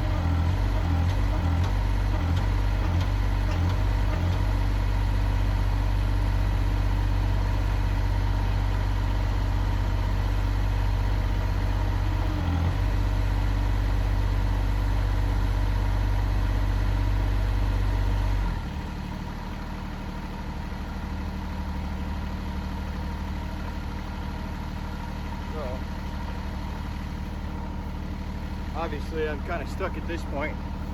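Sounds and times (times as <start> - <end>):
heavy machine engine revving: 0.0 - 4.7.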